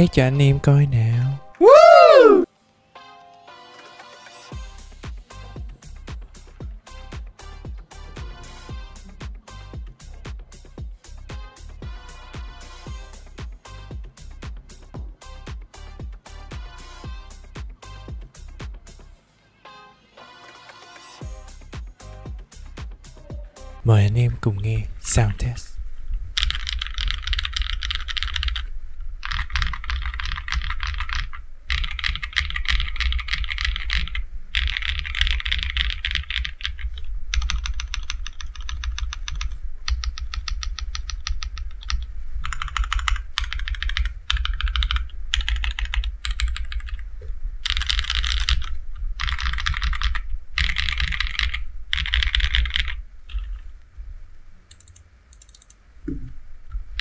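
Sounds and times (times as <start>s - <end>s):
mechanical keyboard typing: 26.4s - 47.0s, 47.6s - 53.6s, 54.7s - 55.8s.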